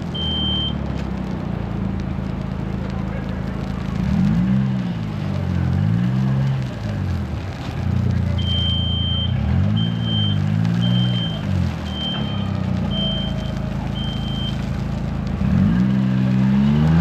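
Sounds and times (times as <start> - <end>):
large vehicle engine revving: 0.0 - 17.0
high-pitched warning beep: 0.1 - 0.8, 8.4 - 14.6.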